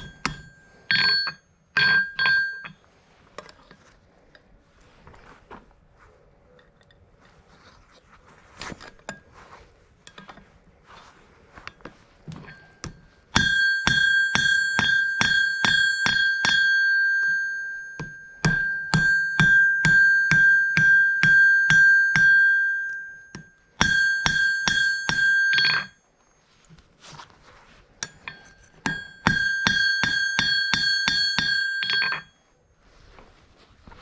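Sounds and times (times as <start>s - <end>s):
anvil ringing: 0.0s - 2.8s, 12.4s - 26.0s, 28.0s - 32.4s
hammer striking steel on anvil: 0.0s - 2.8s, 12.3s - 26.0s, 28.0s - 32.4s.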